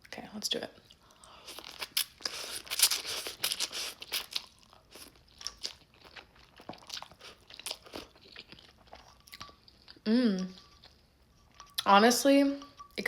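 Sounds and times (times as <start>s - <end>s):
person eating noodles: 1.4s - 11.8s.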